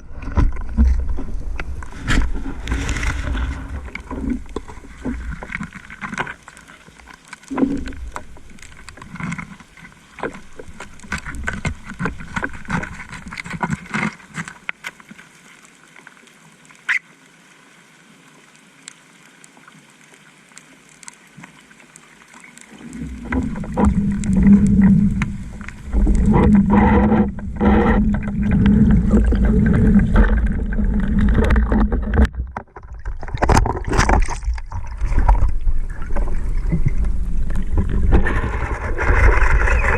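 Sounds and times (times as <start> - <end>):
underwater water noise: 0.0 - 39.9
boat motor rumbling: 23.1 - 32.6.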